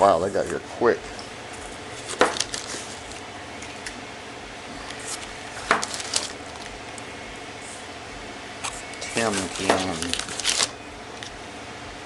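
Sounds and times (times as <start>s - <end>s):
packaging clicks and rustles: 2.0s - 3.8s, 4.9s - 6.8s, 8.6s - 11.4s.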